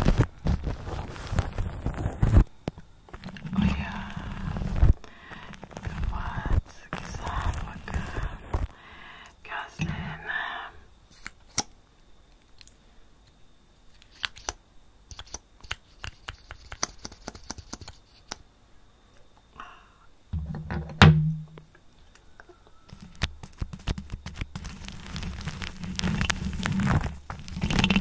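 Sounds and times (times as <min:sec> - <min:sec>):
rubbing against microphone: 0:00.0 - 0:02.4, 0:03.2 - 0:08.7, 0:23.0 - 0:28.0
sharp knock: 0:20.4 - 0:21.6.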